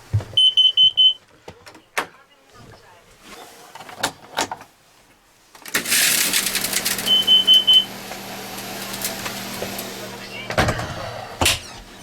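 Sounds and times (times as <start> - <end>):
alarm high beeps: 0.4 - 1.2, 7.1 - 7.9.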